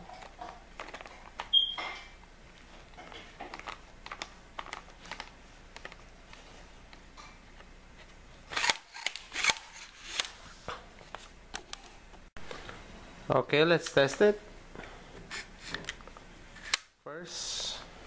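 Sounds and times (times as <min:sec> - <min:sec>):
plastic and metal clicks and rattles: 0:00.0 - 0:01.6, 0:02.9 - 0:06.0.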